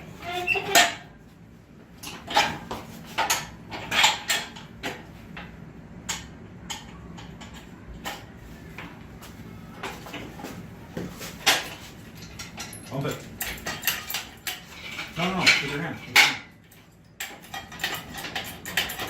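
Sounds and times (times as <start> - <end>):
metal tools clanking: 11.4 - 19.0.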